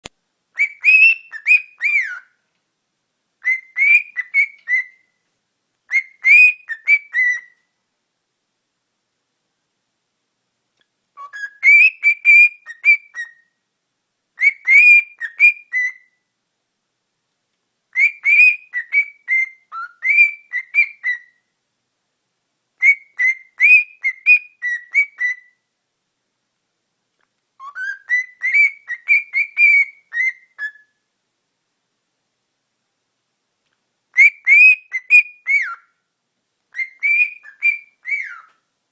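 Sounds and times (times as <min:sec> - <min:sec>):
cockatiel whistling: 0:00.6 - 0:02.4, 0:03.4 - 0:05.1, 0:05.9 - 0:07.6, 0:11.2 - 0:13.5, 0:14.4 - 0:16.2, 0:17.9 - 0:21.4, 0:22.8 - 0:25.6, 0:27.6 - 0:31.0, 0:34.1 - 0:35.9, 0:36.7 - 0:38.6.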